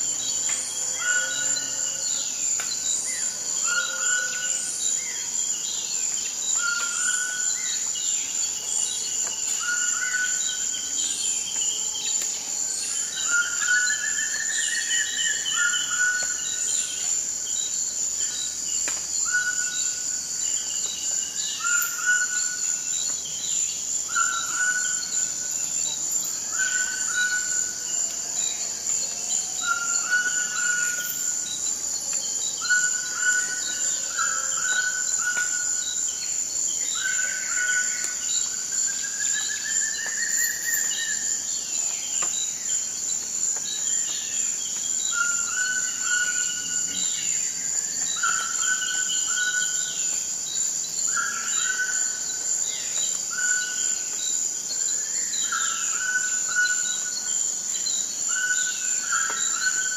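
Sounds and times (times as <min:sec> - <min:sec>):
high-pitched insect drone: 0:21.4 - 0:59.9.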